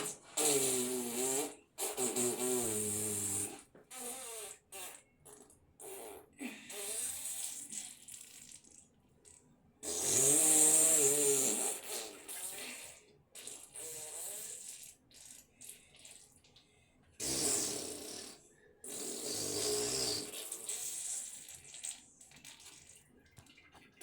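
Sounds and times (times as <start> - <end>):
buzzy fart sounds: 0.0 - 8.5, 9.8 - 15.0, 17.2 - 22.0.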